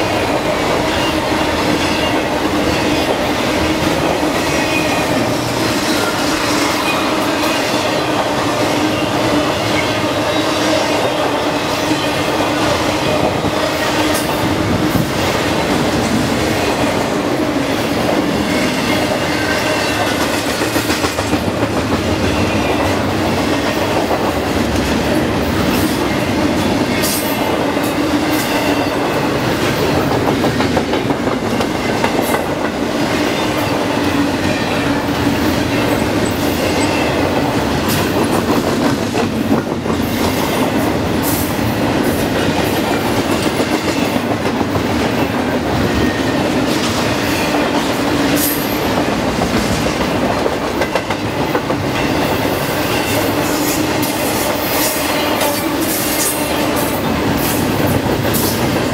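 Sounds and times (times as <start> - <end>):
train cars rumbling past: 0.0 - 58.9.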